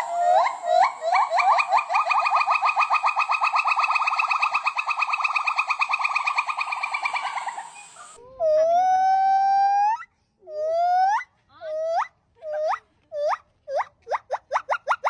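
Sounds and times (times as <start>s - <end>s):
monkey chirping trill: 0.0s - 9.4s, 11.8s - 15.0s
monkey whistle-like call: 0.0s - 10.0s.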